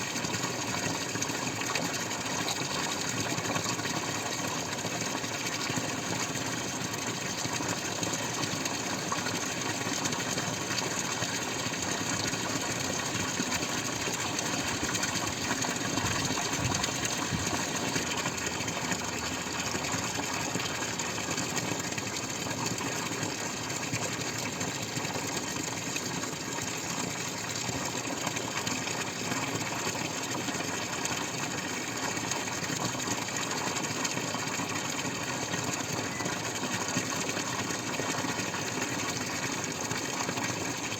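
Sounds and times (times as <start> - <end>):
water running and splashing: 0.0 - 40.9.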